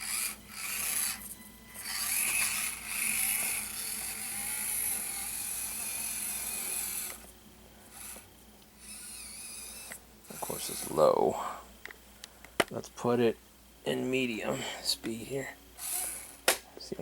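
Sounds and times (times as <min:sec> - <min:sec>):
small electric motor whirring: 0:00.0 - 0:11.2, 0:15.8 - 0:16.6.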